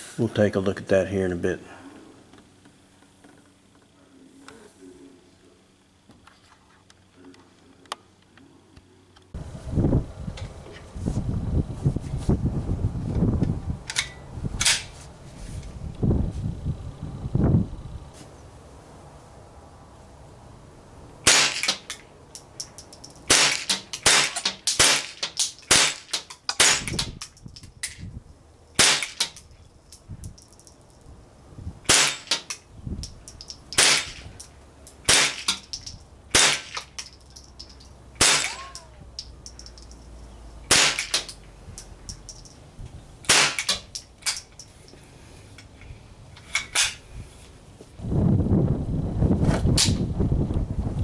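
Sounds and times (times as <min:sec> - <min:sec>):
rifle shots cracking: 0:21.2 - 0:21.9, 0:23.3 - 0:27.0, 0:28.8 - 0:29.4, 0:31.9 - 0:32.5, 0:33.7 - 0:34.4, 0:35.0 - 0:35.5, 0:36.3 - 0:36.9, 0:38.2 - 0:38.6, 0:40.7 - 0:41.4, 0:43.3 - 0:43.9.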